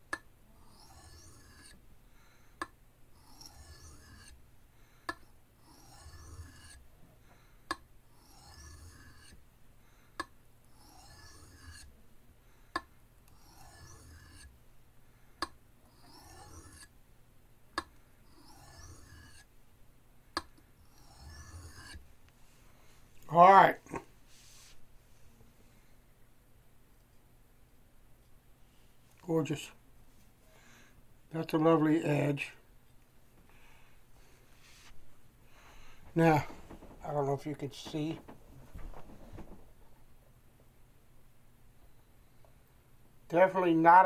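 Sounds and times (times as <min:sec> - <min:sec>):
knife scraping on sharpening stone: 0:00.7 - 0:01.8, 0:03.2 - 0:04.4, 0:05.6 - 0:06.8, 0:08.2 - 0:09.4, 0:10.8 - 0:11.9, 0:13.4 - 0:14.5, 0:16.0 - 0:16.9, 0:18.3 - 0:19.5, 0:20.9 - 0:22.0.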